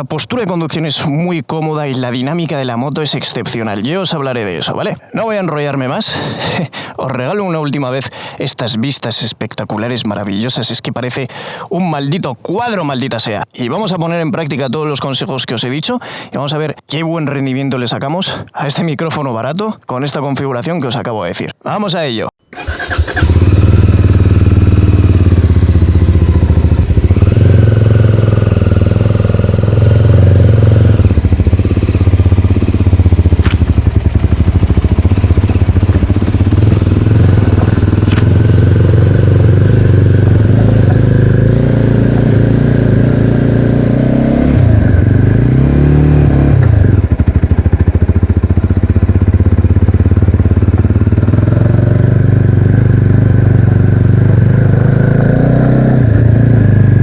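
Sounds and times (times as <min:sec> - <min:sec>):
motorcycle engine revving: 0:22.5 - 0:57.0
sharp clicks: 0:33.3 - 0:33.9.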